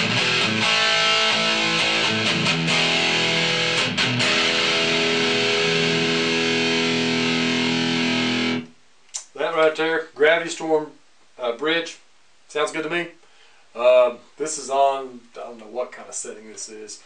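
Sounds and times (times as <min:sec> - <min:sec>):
distorted electric guitar: 0:00.0 - 0:09.4.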